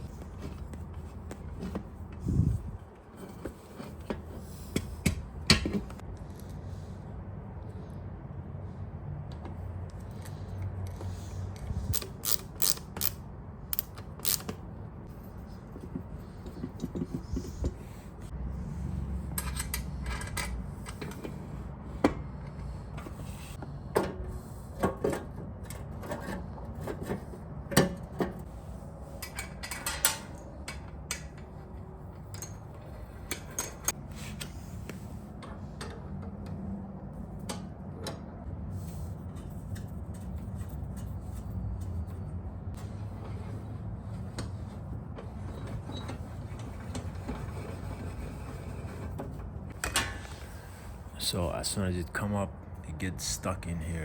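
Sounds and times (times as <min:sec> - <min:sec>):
metallic clicks and scraping: 0:09.9 - 0:14.6, 0:19.3 - 0:21.4.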